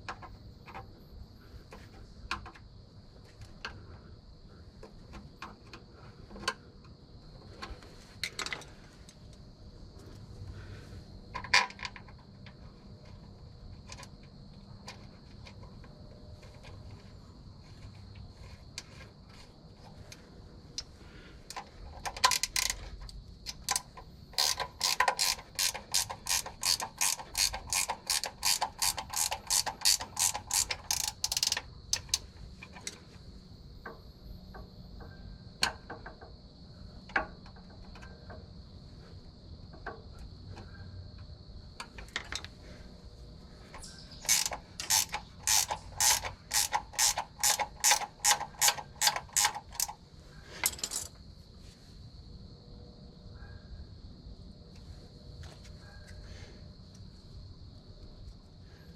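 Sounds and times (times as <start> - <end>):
ratchet wrench clicking: 22.0 - 33.0, 43.8 - 50.0
tool handling: 43.6 - 51.2.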